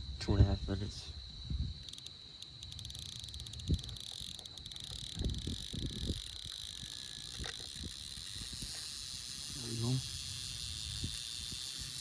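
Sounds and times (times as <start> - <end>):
night insects trilling: 0.0 - 12.0.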